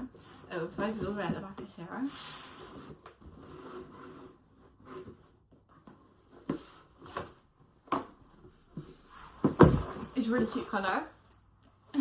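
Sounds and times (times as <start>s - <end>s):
cardboard taps and rustles: 5.5s - 10.8s.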